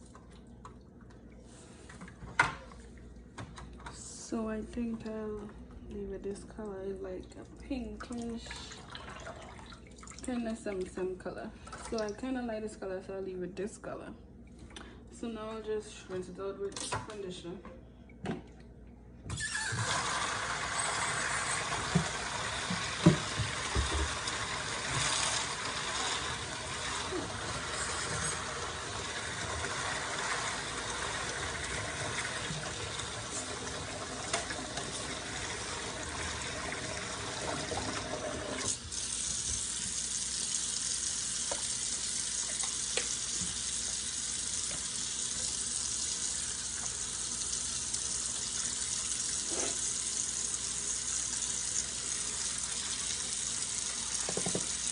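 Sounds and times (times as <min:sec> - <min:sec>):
tap water running: 0:06.7 - 0:11.0, 0:19.3 - 0:54.9.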